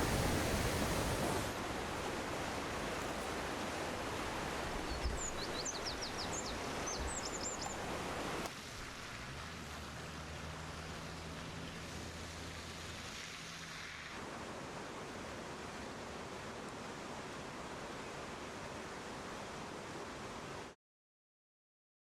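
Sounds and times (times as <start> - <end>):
rushing floodwater: 0.0 - 20.8.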